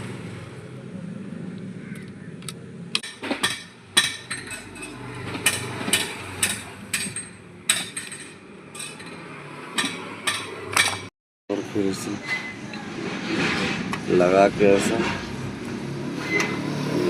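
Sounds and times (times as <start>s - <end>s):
metal tools clinking and tapping: 3.0s - 11.1s.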